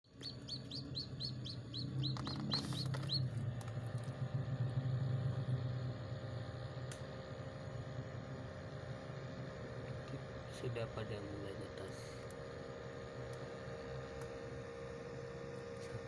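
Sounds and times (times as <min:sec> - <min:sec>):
low hum: 0:00.1 - 0:16.0
chicks peeping: 0:00.2 - 0:03.3.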